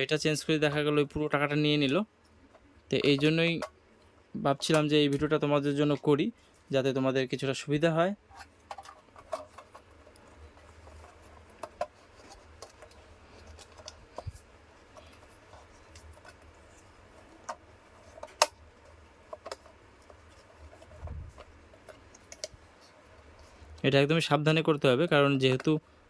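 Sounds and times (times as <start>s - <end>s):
clicks and taps of fan parts: 8.3s - 23.9s.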